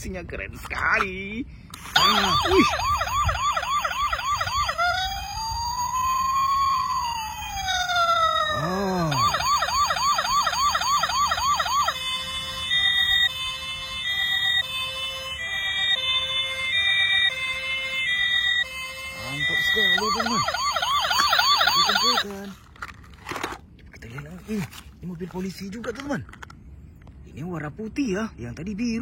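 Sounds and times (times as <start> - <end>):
toy police siren: 1.9 - 22.6.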